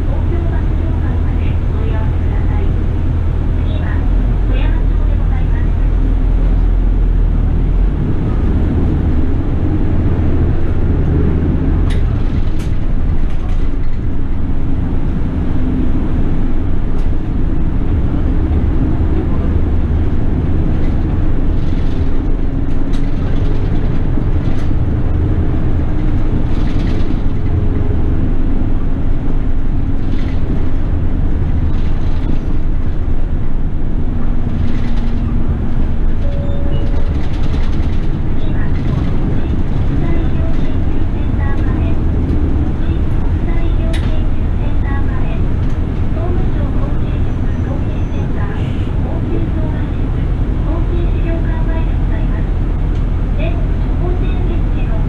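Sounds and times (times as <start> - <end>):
bus engine and road rumble: 0.0 - 55.0
clicks and rattles: 26.5 - 27.5, 34.5 - 35.4, 36.0 - 40.7.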